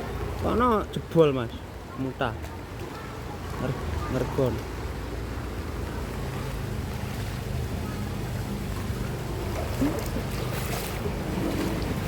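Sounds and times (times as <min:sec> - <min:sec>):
floodwater rushing: 0:00.0 - 0:12.0.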